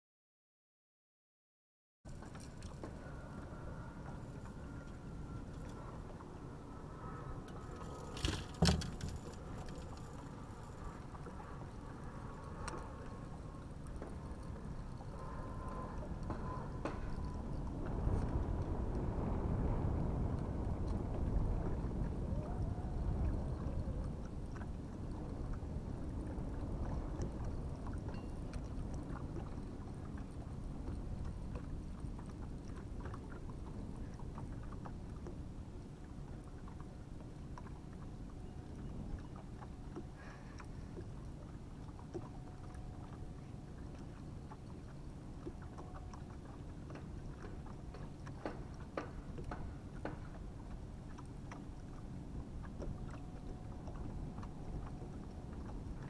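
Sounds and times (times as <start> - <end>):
boat engine rumble: 2.1 - 56.0
light ticks and taps: 46.9 - 50.4.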